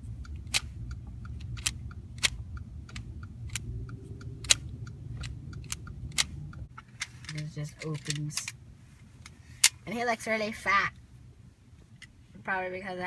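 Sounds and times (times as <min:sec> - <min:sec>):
plastic toy parts clicking: 0:00.2 - 0:03.7, 0:04.3 - 0:08.6.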